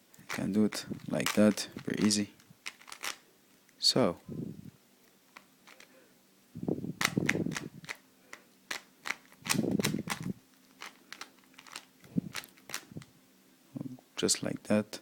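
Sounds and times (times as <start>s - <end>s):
cube being handled knocks: 7.0s - 8.0s
puzzle cube layers clicking: 8.7s - 12.9s.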